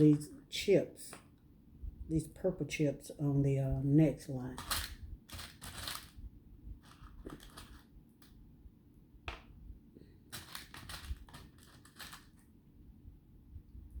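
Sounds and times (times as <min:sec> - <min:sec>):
beads clicking and rattling: 0:04.6 - 0:06.2, 0:10.3 - 0:12.4.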